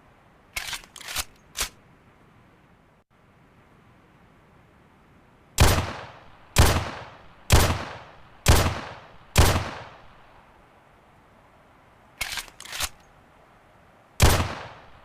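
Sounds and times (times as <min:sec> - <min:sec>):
pistol shots: 0:05.6 - 0:10.1, 0:14.2 - 0:15.0.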